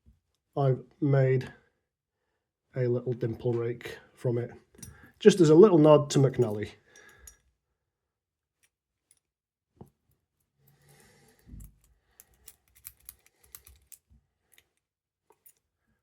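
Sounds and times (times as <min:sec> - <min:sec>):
lock pick scraping: 0:10.7 - 0:15.7
small metallic clicks: 0:10.9 - 0:15.6.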